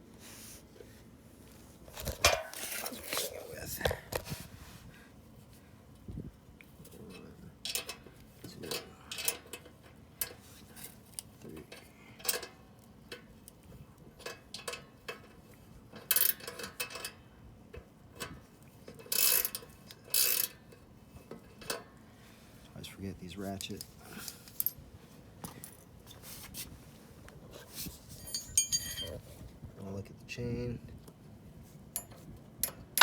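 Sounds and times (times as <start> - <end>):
ratchet wrench clicking: 19.1 - 20.6
metal hand tools clinking: 28.2 - 29.2.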